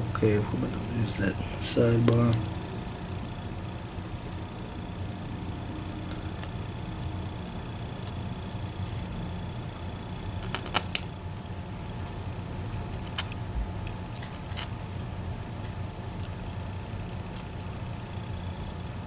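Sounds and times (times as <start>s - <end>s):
steady low hum: 0.0s - 19.0s
metal lock parts clicking: 2.1s - 8.7s, 10.4s - 11.1s, 12.9s - 14.8s, 16.2s - 17.7s.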